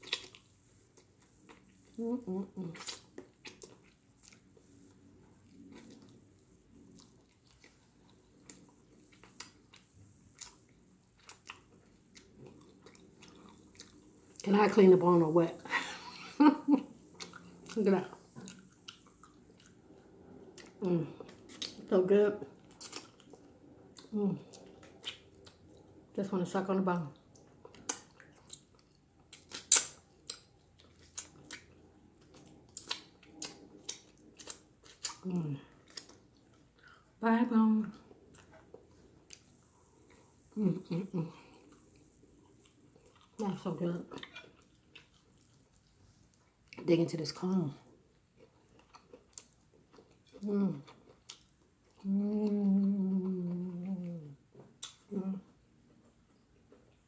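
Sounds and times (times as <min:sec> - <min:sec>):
close-miked chewing: 0:00.0 - 0:57.0
mouth sucking and smacking: 0:27.4 - 0:30.4
wet mouth smacks and clicks: 0:29.4 - 0:30.4.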